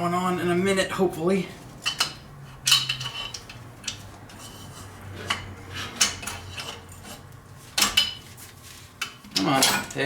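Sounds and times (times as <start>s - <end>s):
hand tools clinking on metal: 1.8s - 4.7s, 9.0s - 10.0s.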